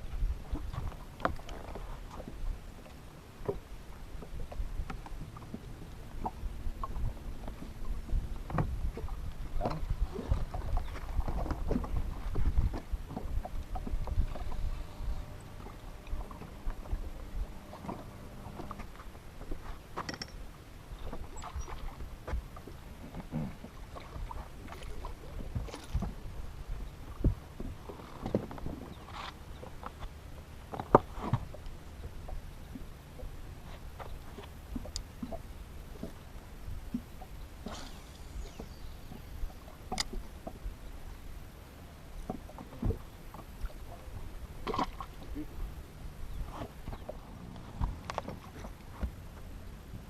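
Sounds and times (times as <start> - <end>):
wind rumbling on microphone: 0.0 - 50.0
knocks and clicks on boat: 0.5 - 26.2, 27.1 - 36.3, 36.9 - 40.7, 42.2 - 43.7, 44.6 - 45.5, 46.3 - 50.0
low rumble: 4.4 - 19.6.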